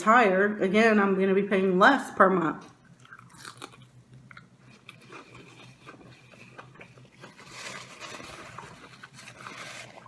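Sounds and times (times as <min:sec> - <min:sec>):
person chewing food: 0:02.8 - 0:10.0.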